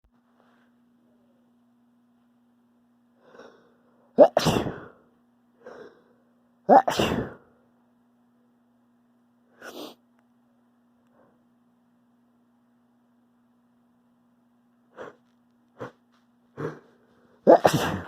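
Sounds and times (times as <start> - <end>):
short in-breath: 3.2 - 3.9
person sneezing: 4.2 - 5.0, 6.7 - 7.4, 9.6 - 10.0, 15.0 - 15.2, 16.6 - 18.0.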